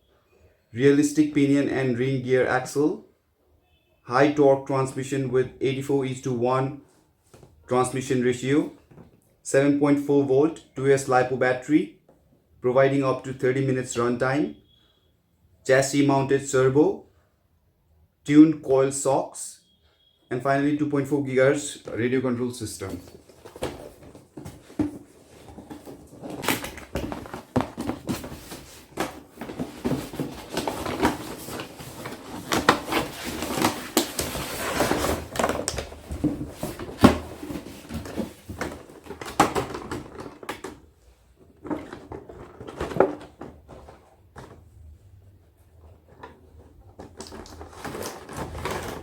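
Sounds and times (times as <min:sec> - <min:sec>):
packaging rustling: 0:22.8 - 0:44.6, 0:45.8 - 0:49.0.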